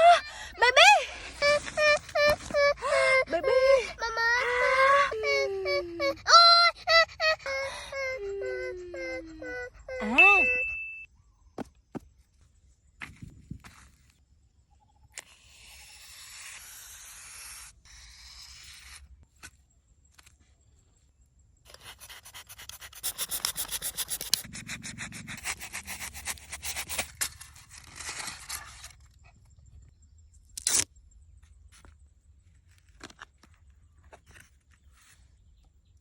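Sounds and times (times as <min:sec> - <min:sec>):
hand scraping strokes: 0:21.7 - 0:28.7.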